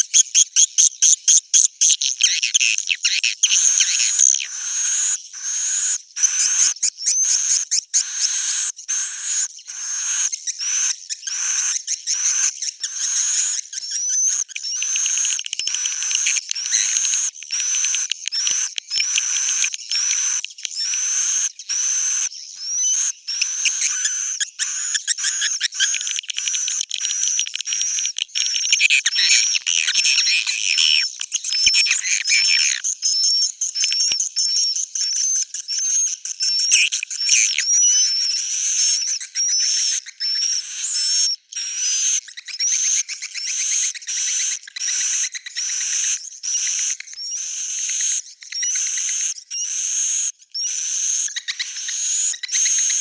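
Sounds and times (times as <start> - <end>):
swiftlets twittering: 13.9 - 32.8.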